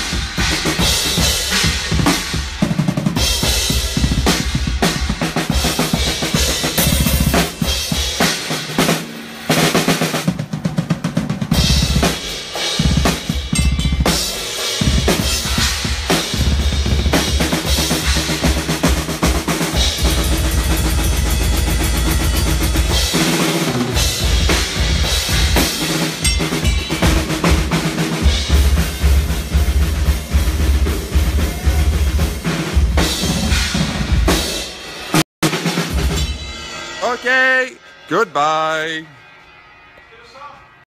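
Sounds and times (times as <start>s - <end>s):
cymbals: 0.0s - 40.8s
rapid bass drum: 11.2s - 34.4s.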